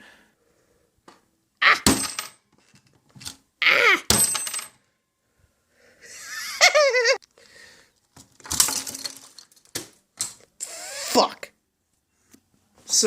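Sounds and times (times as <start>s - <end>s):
metallic clinks and scraping: 8.2s - 10.4s.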